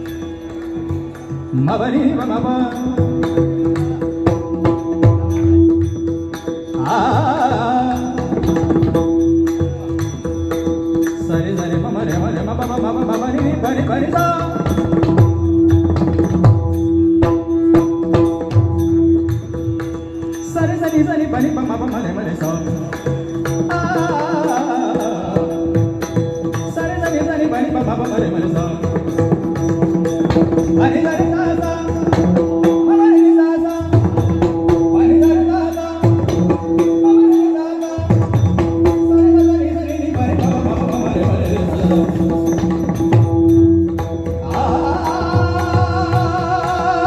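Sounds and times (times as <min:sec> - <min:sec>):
hand drum stroke pattern: 0:38.0 - 0:47.0
person singing: 0:44.4 - 0:47.0.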